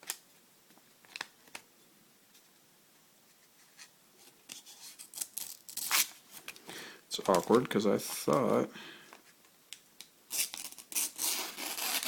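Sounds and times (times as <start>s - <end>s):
paper rustling: 7.2s - 8.6s.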